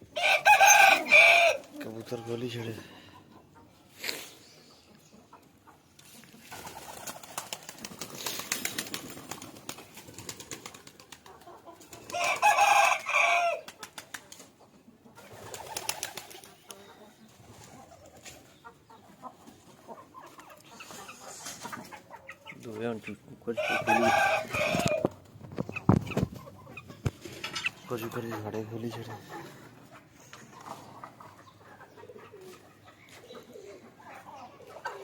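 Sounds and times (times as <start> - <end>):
rooster crowing: 0.2 - 1.6, 12.1 - 13.6, 23.6 - 25.0
wings flapping and rustling: 6.1 - 14.6, 15.2 - 16.8, 23.7 - 27.7.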